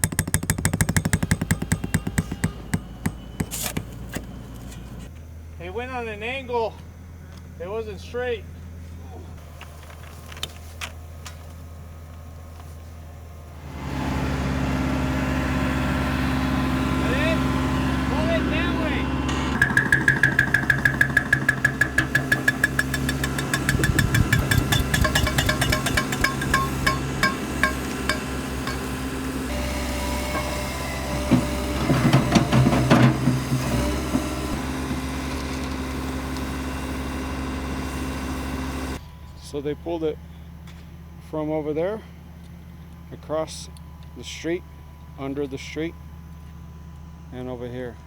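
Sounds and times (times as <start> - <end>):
irregular knocks: 0.0 - 4.0, 19.5 - 29.1
sharp metallic clanks: 0.0 - 4.0, 19.3 - 29.6
diesel engine running: 11.7 - 39.3.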